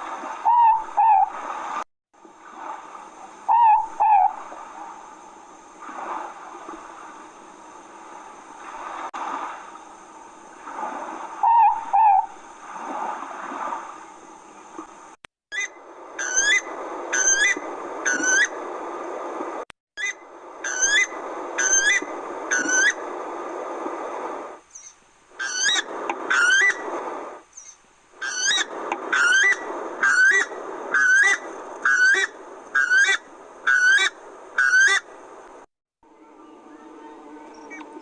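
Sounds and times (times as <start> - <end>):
bird whistling rising notes: 15.5 - 18.5, 27.6 - 31.3, 36.2 - 38.0.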